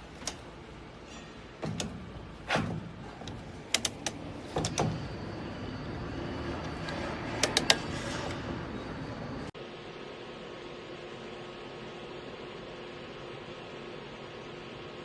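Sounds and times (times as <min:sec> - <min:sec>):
sharp clicks and knocks: 0:00.0 - 0:05.2, 0:06.6 - 0:08.4
heater fan whirring: 0:00.0 - 0:15.0.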